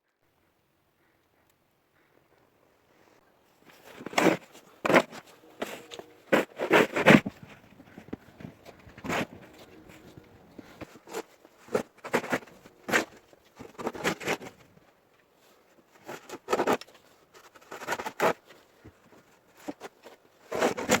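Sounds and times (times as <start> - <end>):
footsteps crunching in snow: 3.6 - 14.3.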